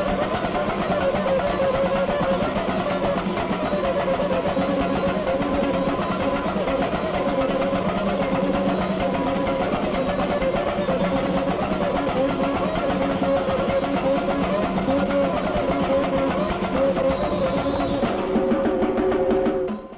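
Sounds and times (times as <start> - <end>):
rapid samba percussion: 0.0 - 19.9.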